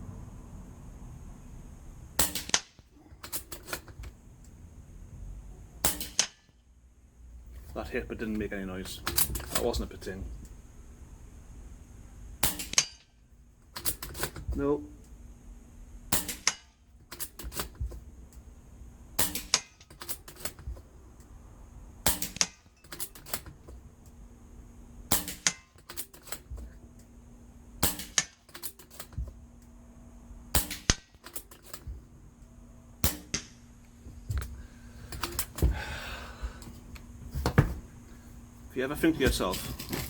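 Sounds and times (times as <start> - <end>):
air rifle shots: 2.2 - 3.9, 5.8 - 6.5, 12.4 - 13.0, 16.1 - 17.9, 19.2 - 20.8, 22.0 - 23.4, 25.1 - 26.8, 27.8 - 29.3, 30.5 - 32.1, 33.0 - 33.7.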